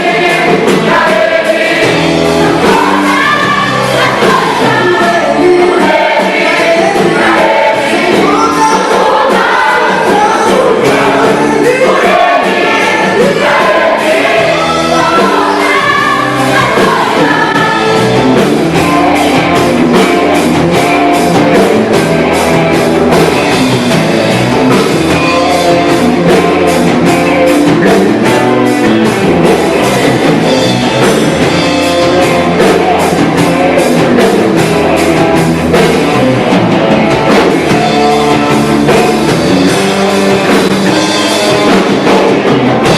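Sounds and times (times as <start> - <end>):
gospel choir singing: 0.0 - 22.1, 31.1 - 35.0
live band with drums: 0.0 - 42.9.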